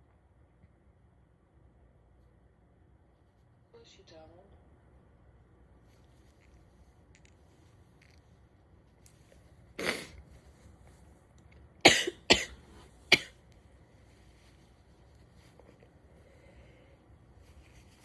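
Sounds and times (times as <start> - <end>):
person sneezing: 9.8 - 10.2, 11.8 - 13.4.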